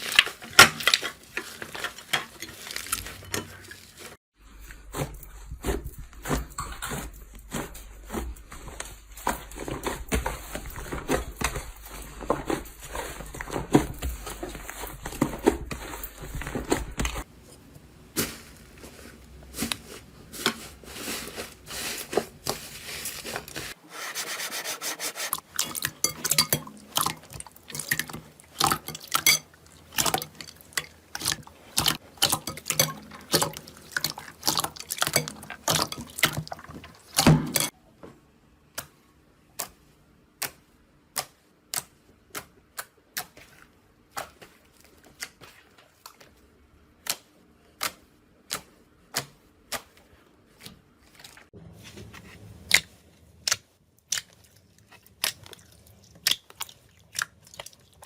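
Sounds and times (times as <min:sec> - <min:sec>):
sharp wet clicks and pops: 0:53.4 - 0:58.0.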